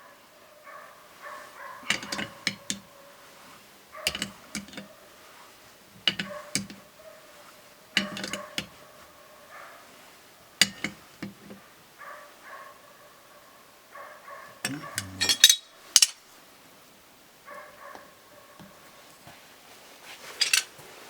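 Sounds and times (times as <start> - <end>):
dishes and cutlery clinking: 1.8 - 2.9, 4.0 - 4.9, 6.0 - 6.8, 8.0 - 8.8, 10.6 - 11.6, 14.6 - 16.2, 20.3 - 20.8.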